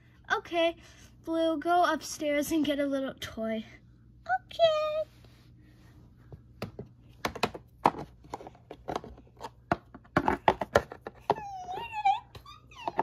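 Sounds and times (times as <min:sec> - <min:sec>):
high-pitched squeaky vocal sound: 0:11.4 - 0:13.0.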